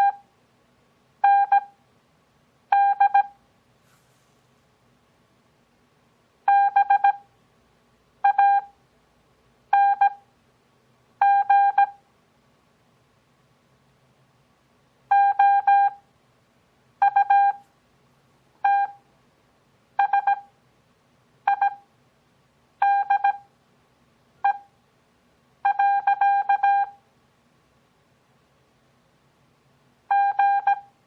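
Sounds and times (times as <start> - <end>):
morse code tone beeps: 0.0 - 0.2, 1.2 - 1.8, 2.7 - 3.4, 6.5 - 7.2, 8.2 - 8.7, 9.8 - 10.2, 11.2 - 12.0, 15.1 - 16.0, 17.0 - 17.6, 18.6 - 19.0, 20.0 - 20.5, 21.5 - 21.8, 22.8 - 23.5, 24.4 - 24.7, 25.6 - 27.0, 30.1 - 30.9.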